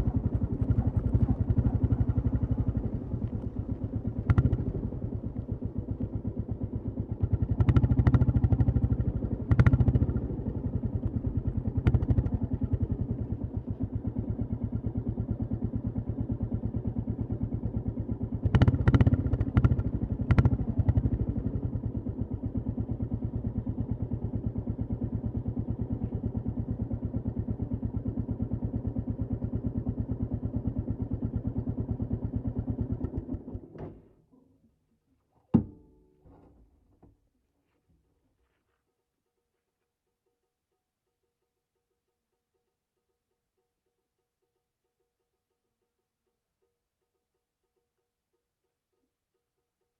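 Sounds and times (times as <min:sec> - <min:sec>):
motorcycle engine thumping: 0:00.0 - 0:14.8, 0:17.9 - 0:27.7, 0:35.5 - 0:37.2.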